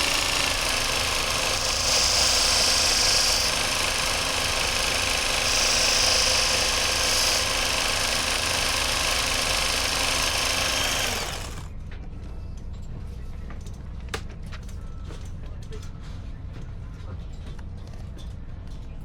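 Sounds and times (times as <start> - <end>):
knife-sharpening grinder running: 0.0 - 11.7.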